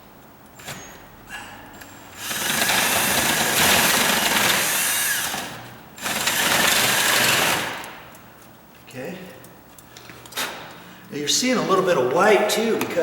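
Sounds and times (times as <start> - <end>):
power drill boring into wood: 2.2 - 7.8.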